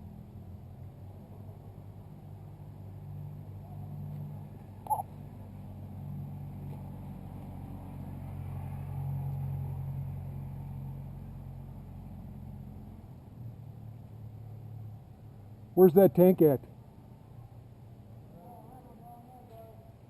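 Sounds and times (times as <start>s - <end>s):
vehicle engine humming: 0.0s - 18.7s.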